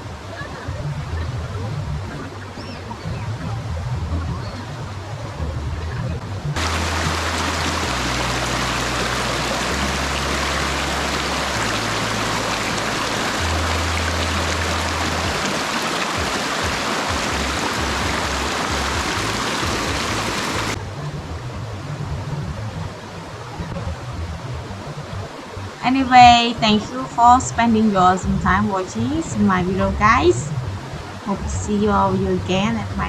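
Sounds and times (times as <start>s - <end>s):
low sustained tones: 0.0s - 15.8s
waterfall rushing: 6.6s - 20.8s.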